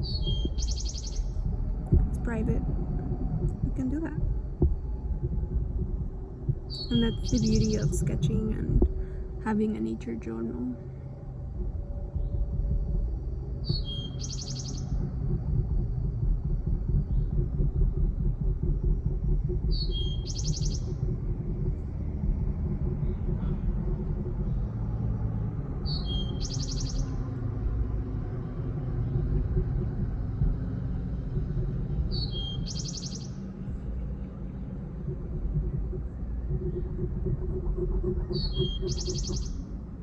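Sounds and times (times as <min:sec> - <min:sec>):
small bird calling with buzzy trill: 0:00.0 - 0:01.3, 0:06.7 - 0:08.2, 0:13.6 - 0:15.0, 0:19.6 - 0:21.0, 0:25.8 - 0:27.2, 0:32.1 - 0:33.4, 0:38.3 - 0:39.6
steady low rumble: 0:00.0 - 0:40.0.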